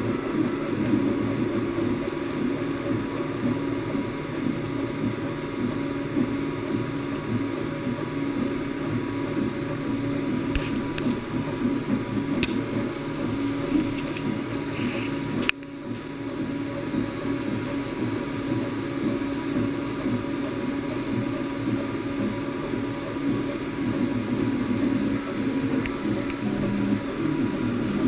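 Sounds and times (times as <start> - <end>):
fan hum: 0.0 - 28.0
stepper motors whirring: 19.0 - 28.0.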